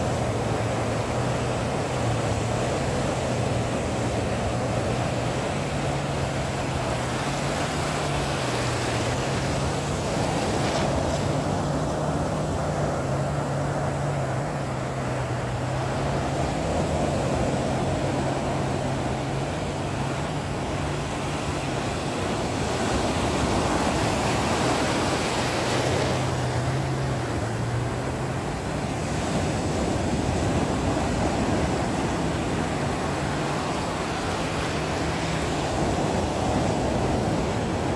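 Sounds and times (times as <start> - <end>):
engine droning: 0.0 - 37.9
sea noise: 0.0 - 37.9.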